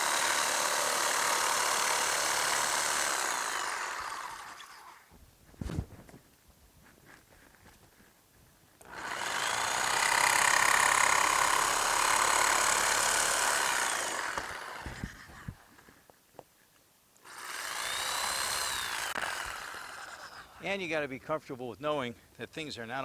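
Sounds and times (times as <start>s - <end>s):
power tool running: 0.0s - 5.1s, 8.8s - 15.6s, 17.2s - 20.6s.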